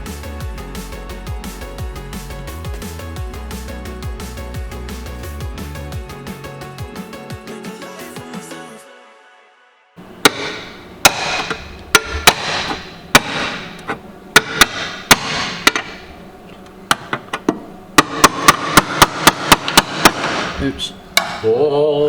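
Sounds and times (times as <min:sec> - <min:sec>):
hammer striking steel plate: 0:10.2 - 0:16.1, 0:18.0 - 0:20.6, 0:21.2 - 0:21.5.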